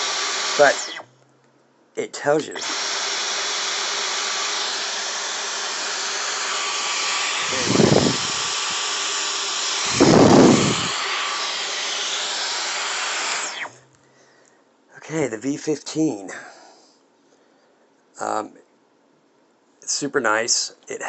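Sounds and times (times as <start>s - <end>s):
stick vacuum running: 0.0s - 1.0s, 2.3s - 13.8s.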